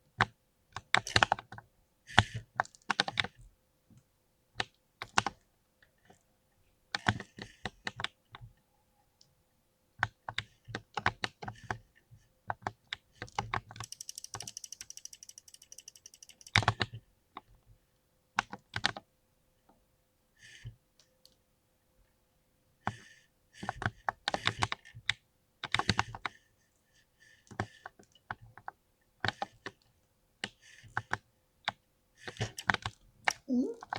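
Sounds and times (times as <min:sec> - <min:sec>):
fast run of key clicks: 0:13.5 - 0:16.8
mechanical keyboard typing: 0:13.8 - 0:16.8.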